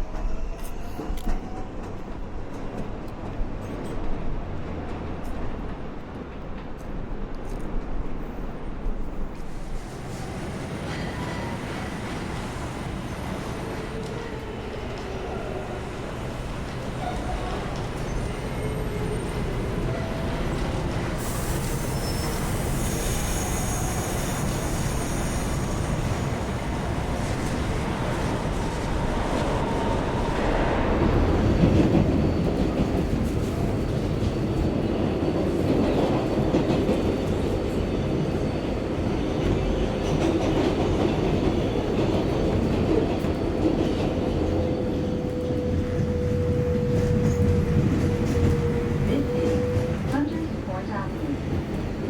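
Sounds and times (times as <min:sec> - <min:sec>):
train wheels rumbling on rail: 0:00.0 - 0:52.0
high wheel squeal: 0:17.9 - 0:26.3.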